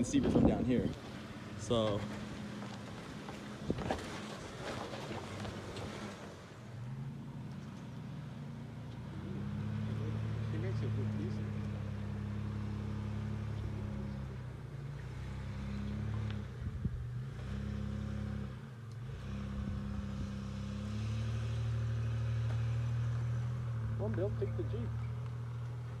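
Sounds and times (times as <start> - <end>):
off-road vehicle engine: 0.0 - 26.0.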